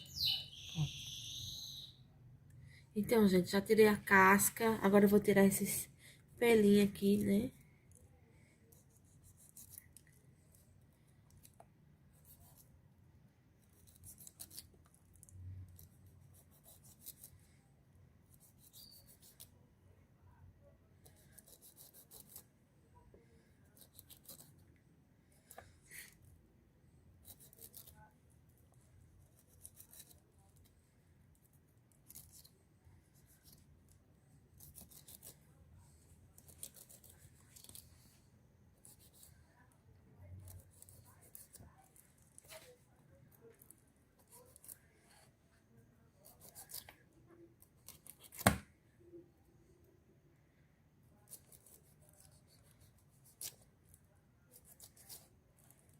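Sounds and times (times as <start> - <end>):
knife scraping pineapple: 18.4 - 19.6, 21.1 - 22.5, 46.2 - 46.9.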